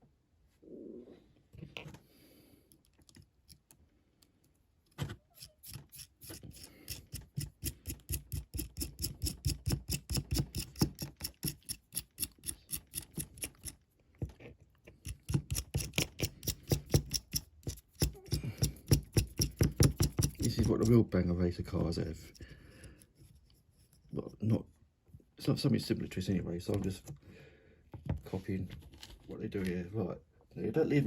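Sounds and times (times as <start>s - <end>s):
rapid clicking of small metal parts: 5.6s - 13.8s, 15.0s - 21.0s.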